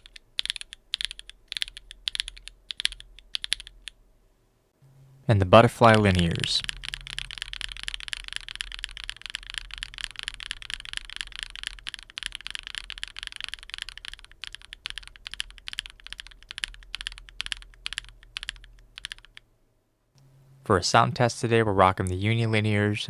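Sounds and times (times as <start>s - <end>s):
mechanical keyboard typing: 0.0s - 4.0s, 5.8s - 19.5s.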